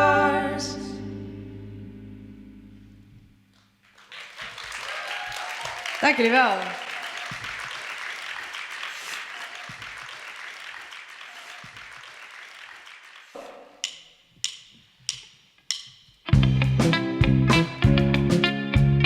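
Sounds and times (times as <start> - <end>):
audience applause: 3.8 - 13.6.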